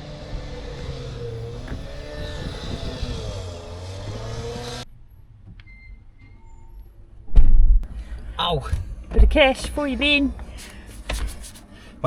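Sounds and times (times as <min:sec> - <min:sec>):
vehicle engine driving: 0:00.0 - 0:05.6
road noise: 0:00.0 - 0:12.0.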